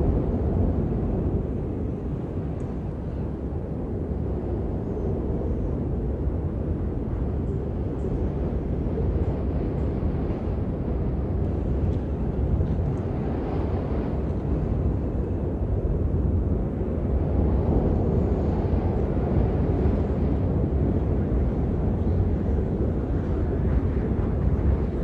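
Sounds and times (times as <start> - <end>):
wind blowing across microphone: 0.0 - 25.0.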